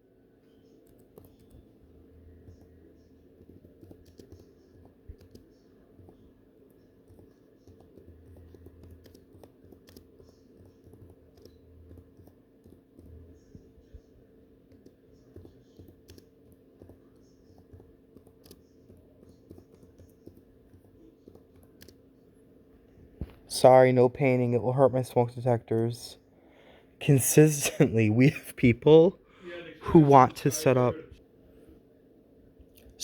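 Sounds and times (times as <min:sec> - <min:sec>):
typing on keyboard: 0:00.4 - 0:22.0.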